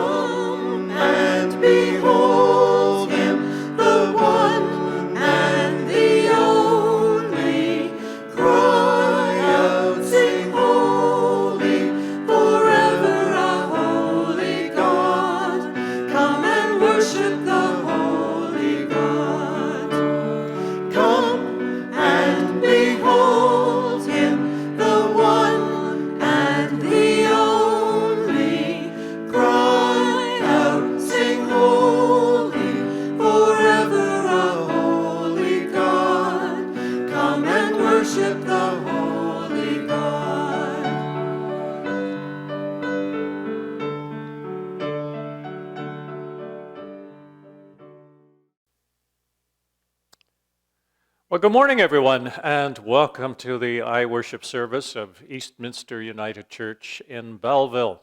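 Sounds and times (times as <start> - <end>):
choir singing a hymn: 0.0 - 42.4
keyboard accompaniment: 0.0 - 48.4.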